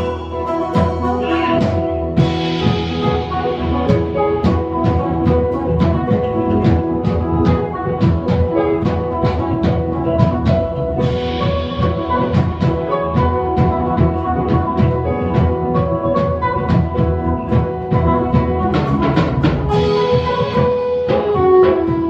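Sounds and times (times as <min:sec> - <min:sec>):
drums hitting steady beat: 0:00.0 - 0:22.0
live band playing: 0:00.0 - 0:22.0.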